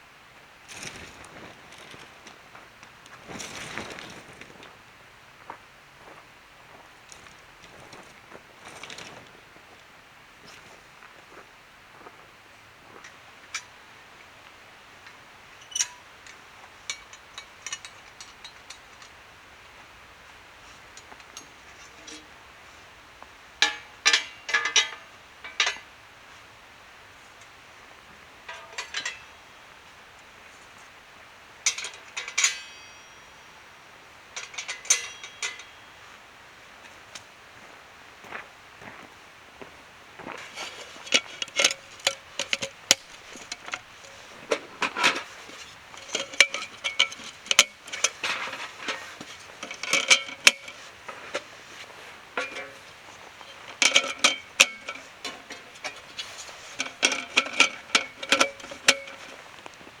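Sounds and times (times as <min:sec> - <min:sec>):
sharp metallic clicks and clinks: 0:31.7 - 0:33.7, 0:34.4 - 0:36.0, 0:40.5 - 0:51.6, 0:52.4 - 0:59.5
bright metallic ring: 0:31.8 - 0:36.2.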